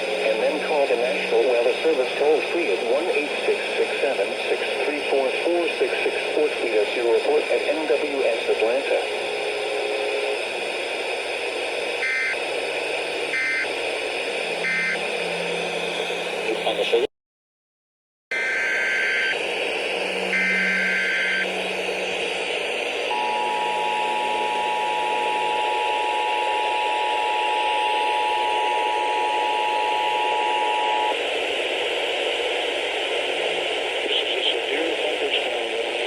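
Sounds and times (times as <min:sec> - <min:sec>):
radio hiss: 0:00.0 - 0:17.1, 0:19.1 - 0:36.0
two-tone attention signal: 0:20.3 - 0:21.6, 0:23.1 - 0:31.1.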